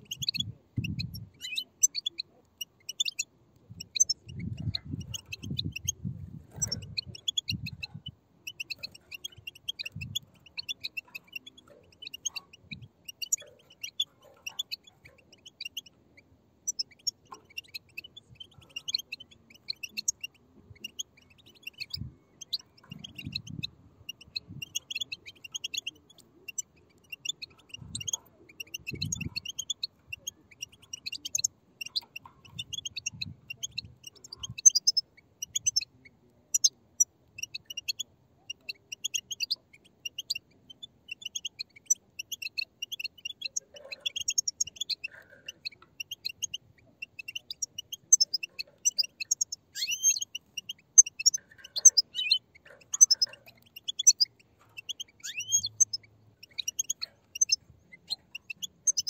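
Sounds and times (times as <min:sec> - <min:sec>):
chicks chirping: 0:00.0 - 0:59.0.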